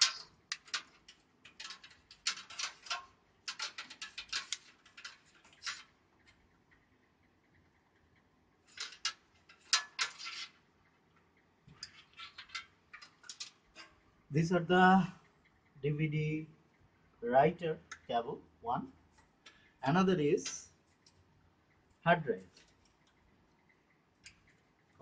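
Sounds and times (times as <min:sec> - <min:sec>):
plastic connectors clicking: 0:00.0 - 0:05.9.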